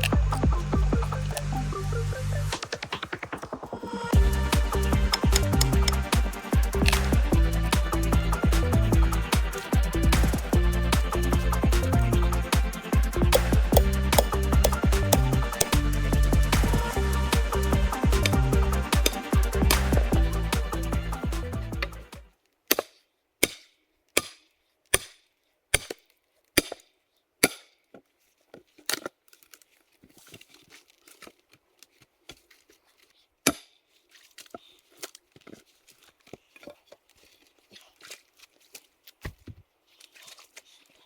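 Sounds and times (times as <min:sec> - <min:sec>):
axe chopping wood: 0:06.8 - 0:07.2, 0:13.3 - 0:15.9, 0:22.7 - 0:26.0, 0:26.6 - 0:26.8, 0:27.4 - 0:27.8, 0:33.5 - 0:33.8.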